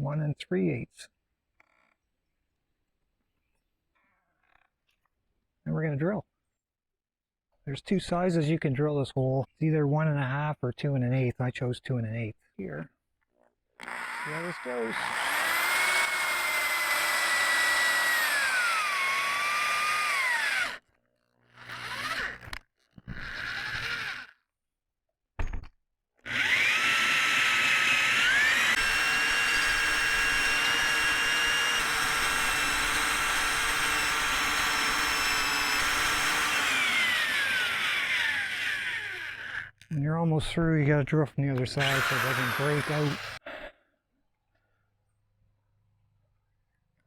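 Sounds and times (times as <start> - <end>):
power drill hole saw cutting wood: 13.8 - 24.4, 26.3 - 39.8, 41.6 - 43.4.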